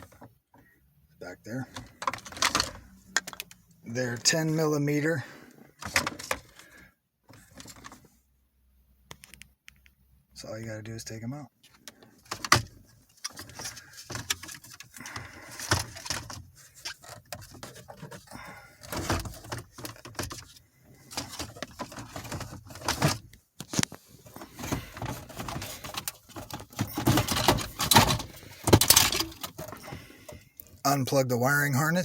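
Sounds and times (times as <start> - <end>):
car stereo being handled: 1.5 - 4.4, 5.7 - 6.6, 7.3 - 8.1, 11.6 - 30.8.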